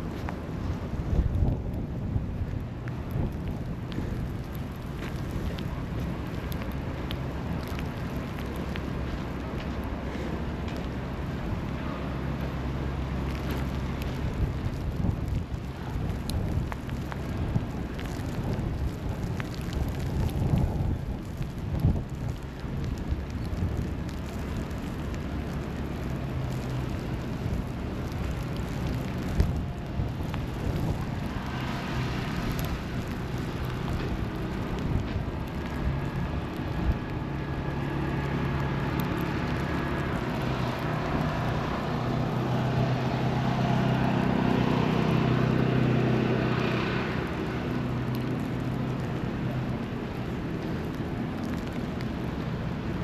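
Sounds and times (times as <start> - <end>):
passing vehicles: 0.0 - 53.0
engine passing by: 23.0 - 52.9.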